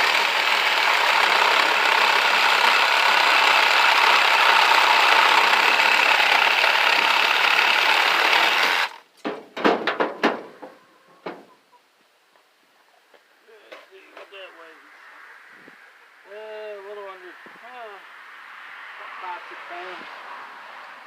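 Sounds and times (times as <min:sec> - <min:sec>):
power tool cutting metal: 0:00.0 - 0:09.0
metal knocks and clatters: 0:09.2 - 0:11.5.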